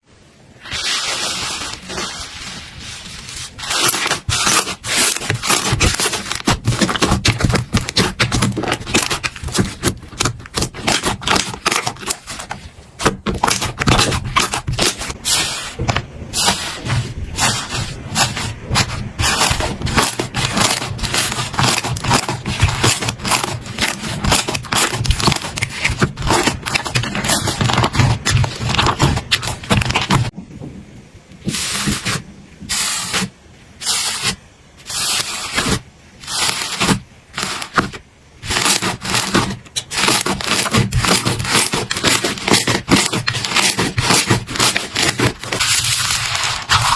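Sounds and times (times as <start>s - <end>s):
slime crackling and popping: 3.6s - 15.2s, 18.1s - 30.3s, 35.2s - 46.9s.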